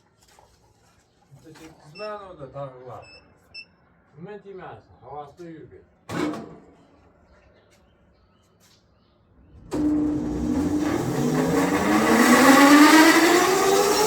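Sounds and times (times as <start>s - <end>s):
machine whine rising in pitch: 9.5s - 14.0s.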